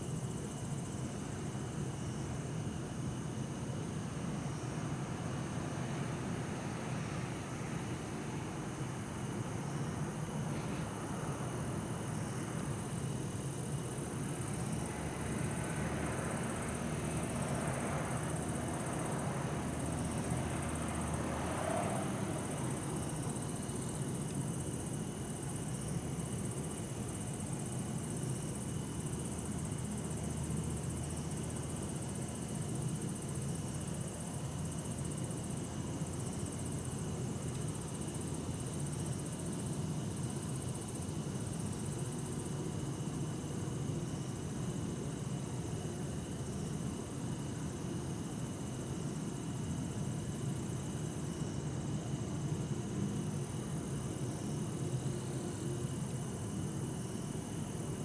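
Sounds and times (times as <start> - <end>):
crickets trilling: 0.0 - 58.0
distant traffic hum: 3.9 - 50.4
vehicle passing: 14.9 - 23.4.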